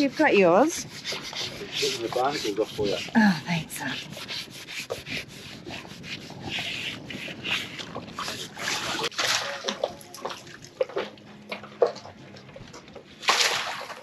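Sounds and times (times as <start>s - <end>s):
scrubbing boat hull: 0.0s - 11.2s
water splashing and sloshing: 0.0s - 14.0s.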